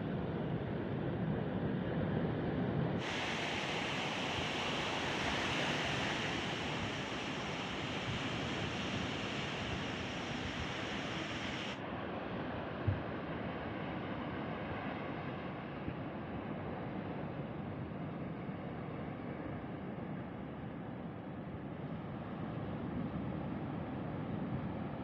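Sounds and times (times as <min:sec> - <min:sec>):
wind: 0:00.0 - 0:25.0
ocean surf: 0:03.0 - 0:11.8.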